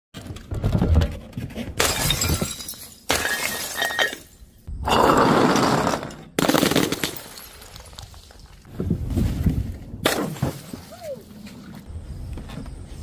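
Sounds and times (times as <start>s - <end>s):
glass bottles shattering: 1.8s - 8.0s.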